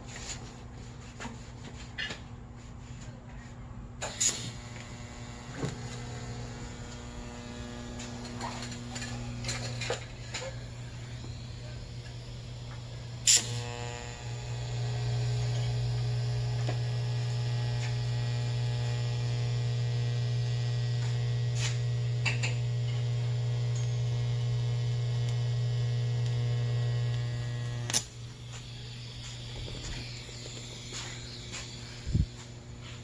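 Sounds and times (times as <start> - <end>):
welding machine humming: 4.0 - 33.0.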